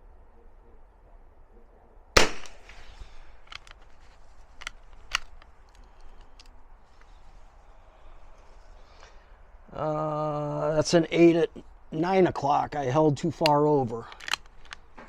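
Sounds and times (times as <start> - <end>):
rifle shot with echo: 2.2 - 3.4
bolt action clicks: 3.4 - 3.9, 4.6 - 7.1, 13.4 - 14.9.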